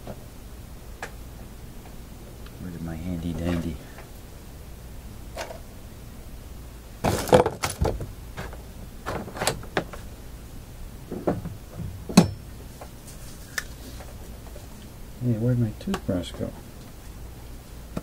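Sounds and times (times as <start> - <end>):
tools clattering on a workbench: 12.1 - 12.4.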